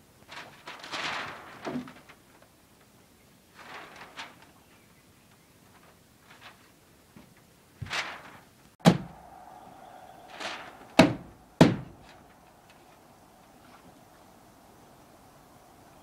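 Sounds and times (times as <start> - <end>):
soft drawn-out sounds: 8.0 - 16.0
loud knocks on wood framing: 8.8 - 9.1, 11.0 - 12.0.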